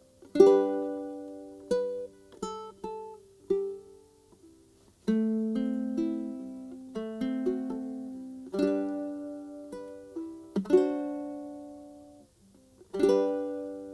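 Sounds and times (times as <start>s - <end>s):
plucked-string chords: 5.1s - 12.2s, 12.9s - 13.9s.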